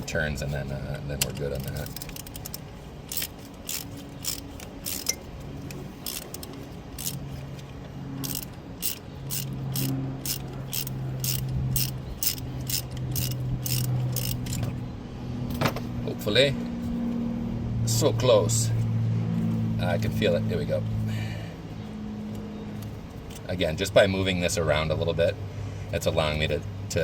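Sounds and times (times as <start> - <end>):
ratchet wrench clicking: 1.2 - 7.2, 8.2 - 14.7.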